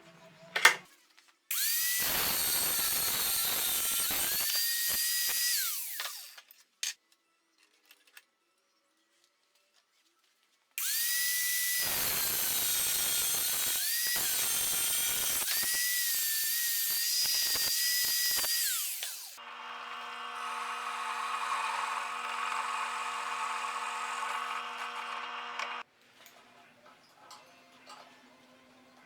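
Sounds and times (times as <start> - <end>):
power tool whining: 1.5 - 6.4, 10.8 - 25.8.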